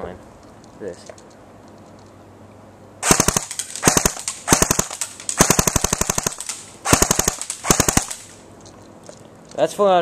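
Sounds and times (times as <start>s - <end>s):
airsoft rifle firing bursts: 3.0s - 8.4s.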